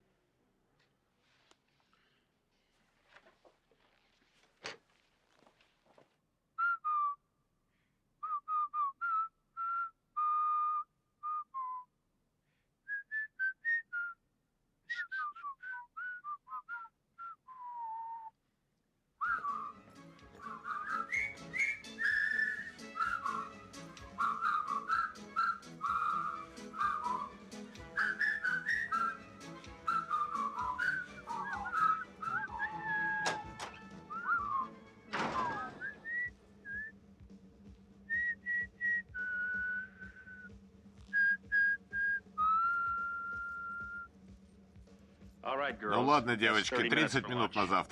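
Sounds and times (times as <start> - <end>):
person whistling a tune: 8.2 - 11.9, 14.9 - 18.3, 19.2 - 37.0, 38.1 - 40.5, 41.1 - 44.1
backing track with sharp clicks: 19.4 - 36.5.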